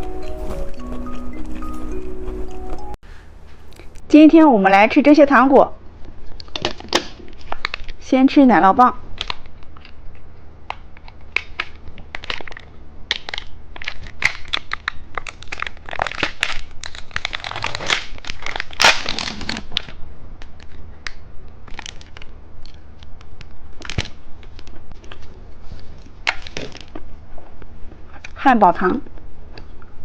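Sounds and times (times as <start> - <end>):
plastic wrapper crinkling: 11.2 - 20.8.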